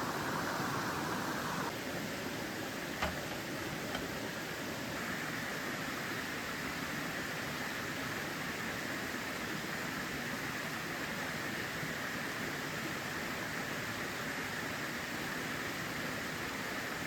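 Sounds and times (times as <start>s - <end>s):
stream water rushing: 0.0s - 2.9s.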